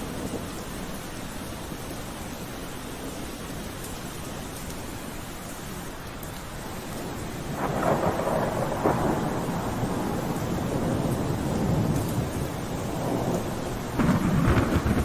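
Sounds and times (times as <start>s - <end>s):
steady rain: 0.0s - 15.0s
thunder rolling with cracks: 7.0s - 15.0s.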